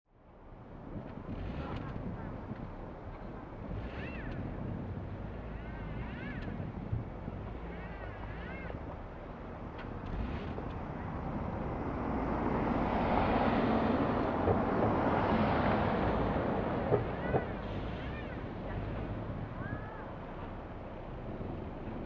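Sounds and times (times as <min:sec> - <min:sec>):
vehicle driving on slush: 0:09.9 - 0:22.0.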